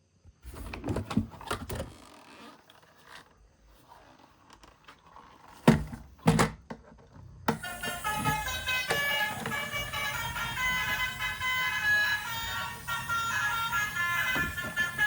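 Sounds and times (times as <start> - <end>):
tune playing: 7.5 - 15.0.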